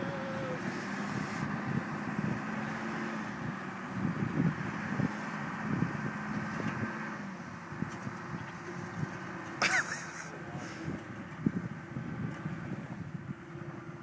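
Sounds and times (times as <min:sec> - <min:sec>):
wind on microphone: 0:00.0 - 0:09.2, 0:10.7 - 0:14.0
vehicle engine running: 0:00.0 - 0:14.0.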